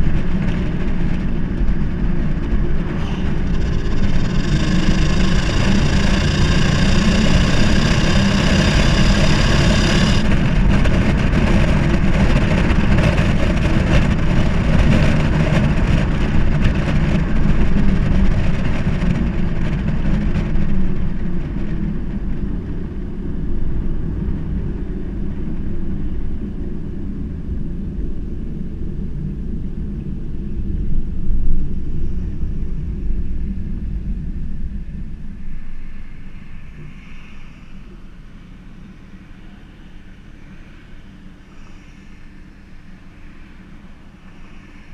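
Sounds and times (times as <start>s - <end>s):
car engine accelerating: 0.0s - 19.0s.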